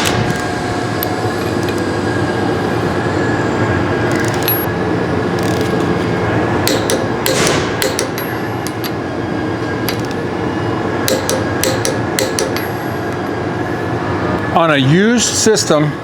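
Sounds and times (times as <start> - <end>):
loud steady machinery noise: 0.0 - 16.0
torque wrench clicking: 4.1 - 4.7, 5.4 - 5.8, 11.1 - 12.7.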